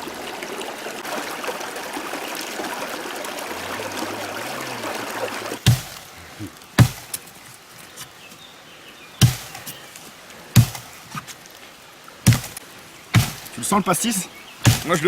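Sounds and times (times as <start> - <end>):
axe chopping wood: 5.6 - 6.1, 6.8 - 7.3, 9.2 - 9.8, 10.6 - 10.9, 12.2 - 13.6, 14.6 - 15.0.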